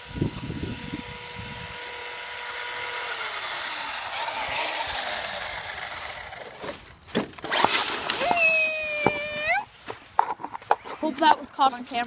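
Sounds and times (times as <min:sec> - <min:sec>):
electric motor whining: 0:00.0 - 0:09.7.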